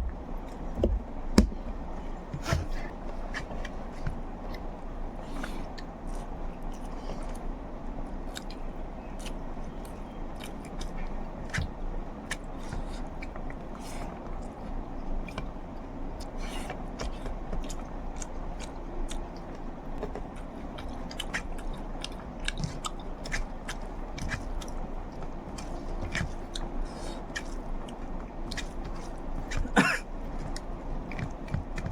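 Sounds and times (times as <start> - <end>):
low hum: 0.0 - 7.8
person chewing with wet smacks: 0.0 - 31.9.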